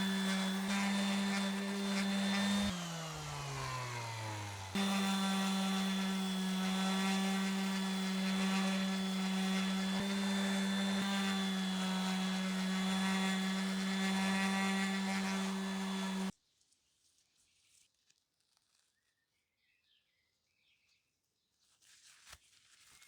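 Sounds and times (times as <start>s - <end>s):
power tool motor whining: 0.0s - 16.3s.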